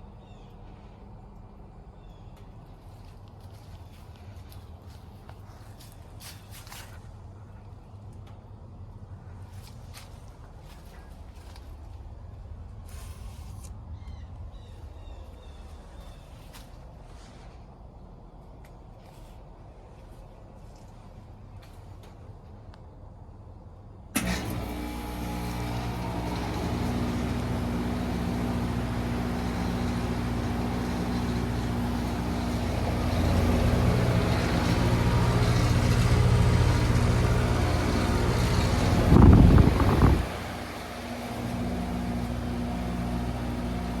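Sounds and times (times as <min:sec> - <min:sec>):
heat pump hum and fan rush: 0:00.0 - 0:44.0
heat pump starting click: 0:24.2 - 0:44.0.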